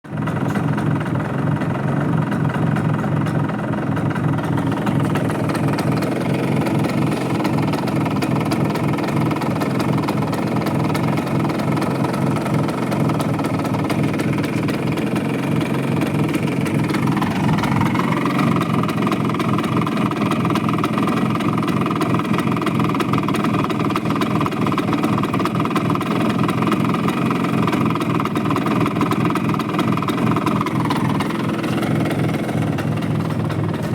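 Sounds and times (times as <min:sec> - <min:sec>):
scooter engine idling: 0:00.0 - 0:33.9.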